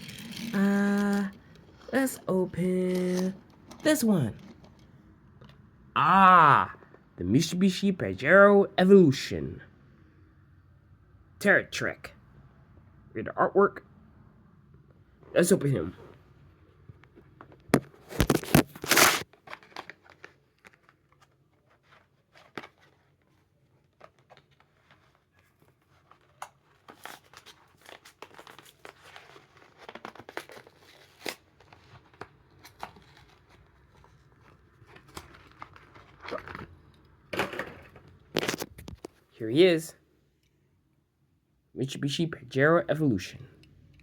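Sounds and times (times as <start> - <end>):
packaging crinkling and rustling: 0.0 - 4.9, 17.8 - 39.2
packaging tearing: 18.0 - 20.9, 26.0 - 36.8.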